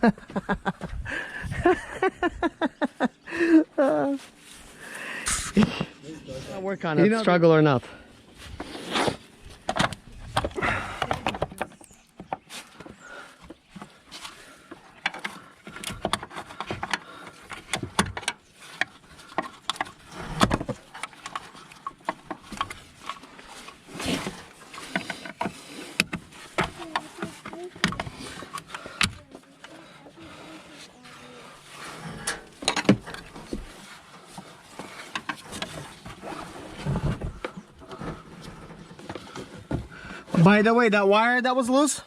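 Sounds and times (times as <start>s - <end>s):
hand tools clicking and knocking: 9.7s - 29.7s, 31.8s - 36.2s.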